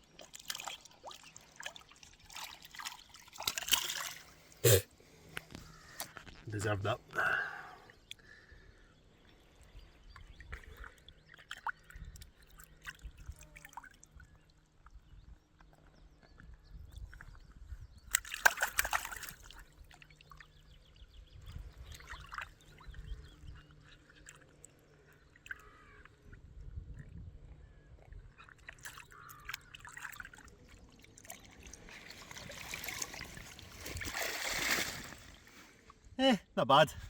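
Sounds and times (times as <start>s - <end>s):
lake water sloshing and splashing: 0.0s - 4.6s, 10.1s - 14.6s, 18.0s - 26.5s, 27.6s - 35.8s.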